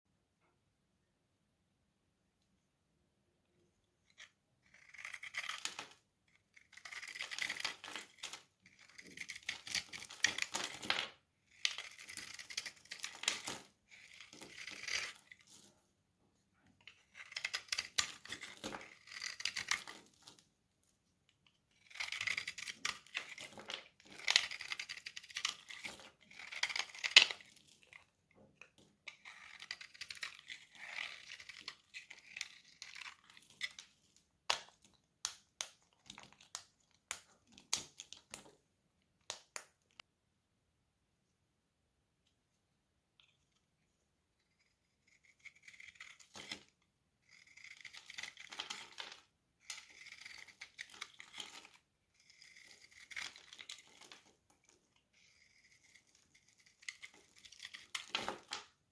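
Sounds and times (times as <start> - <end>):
knife scraping through soap: 4.1 - 10.8, 11.5 - 15.7, 16.8 - 20.4, 21.7 - 33.9, 44.4 - 54.3, 54.9 - 58.5.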